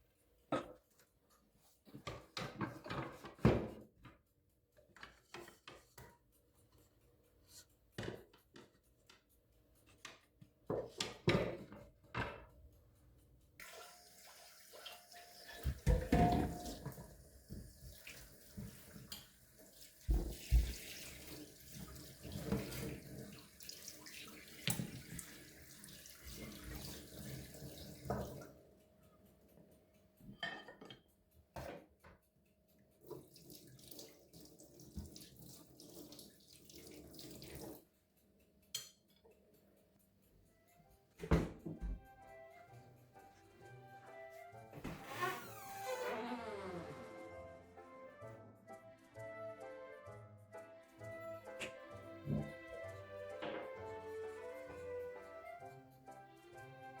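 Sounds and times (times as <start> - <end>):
objects knocking and clattering: 1.9 - 4.2, 10.7 - 12.6, 15.6 - 17.6
tap water running into sink: 13.6 - 28.5, 33.1 - 37.9, 51.6 - 52.7.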